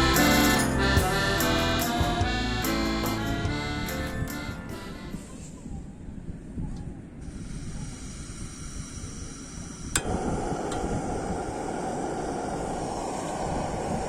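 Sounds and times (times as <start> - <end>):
gas burner hissing: 7.2 - 14.0
igniter click: 9.9 - 11.0.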